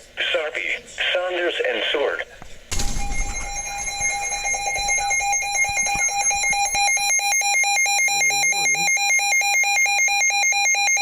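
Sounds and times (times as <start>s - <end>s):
rapid electronic alarm beeping: 2.7s - 11.0s.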